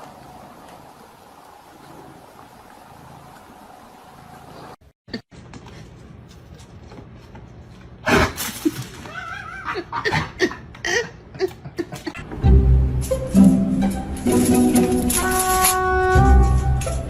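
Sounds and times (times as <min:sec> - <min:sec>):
music: 0:12.2 - 0:17.0.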